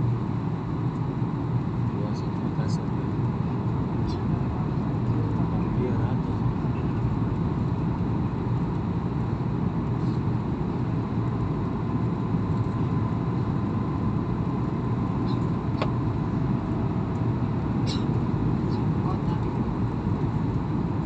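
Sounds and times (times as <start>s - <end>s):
airliner cabin drone: 0.0s - 21.0s.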